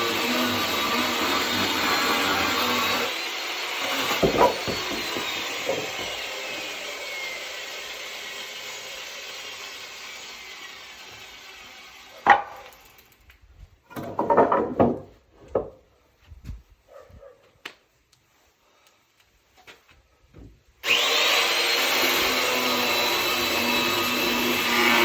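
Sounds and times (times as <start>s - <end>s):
sharp knocks: 4.0s - 6.2s
electric chainsaw winding down: 20.8s - 25.0s.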